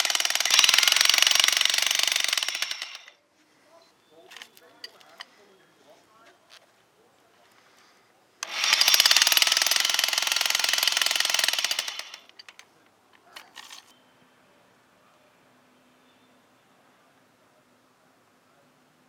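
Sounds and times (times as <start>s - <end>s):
hammer drill hammering: 0.0s - 3.1s, 8.4s - 12.3s.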